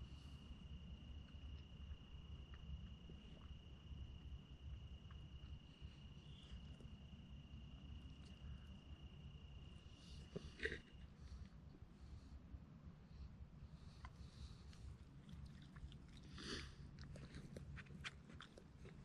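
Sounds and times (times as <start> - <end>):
insect trill: 0.1 - 11.1.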